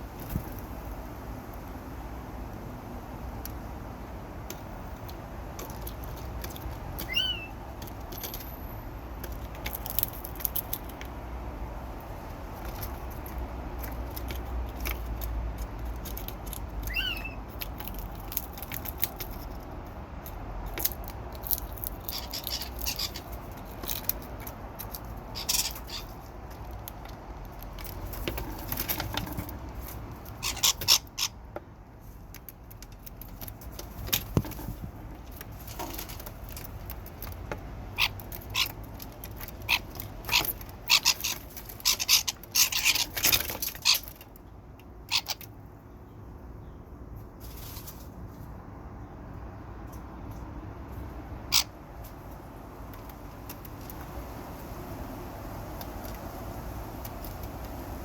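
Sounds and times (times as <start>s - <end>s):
bird clicks and chatter: 4.4s - 8.5s, 9.2s - 11.2s, 12.0s - 31.7s, 32.3s - 45.6s
birds calling: 5.6s - 8.0s, 15.8s - 17.8s, 22.0s - 26.8s, 27.8s - 31.5s, 37.9s - 46.9s, 51.4s - 51.8s.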